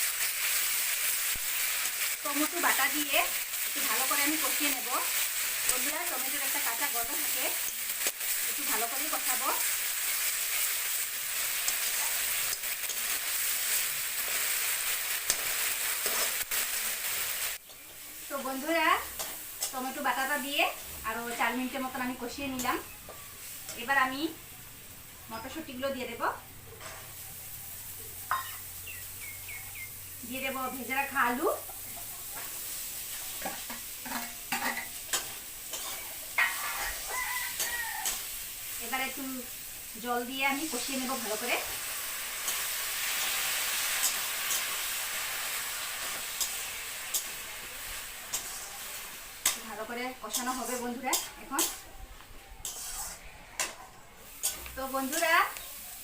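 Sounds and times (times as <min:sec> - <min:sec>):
paste sizzling in oil: 0:00.0 - 0:26.2, 0:26.8 - 0:56.0
spoon scraping a pan: 0:03.6 - 0:18.0, 0:28.3 - 0:28.6, 0:31.9 - 0:38.4, 0:40.7 - 0:55.7
spoon scraping and knocking pan: 0:28.3 - 0:28.6, 0:32.0 - 0:38.4, 0:48.3 - 0:51.9, 0:52.6 - 0:55.4.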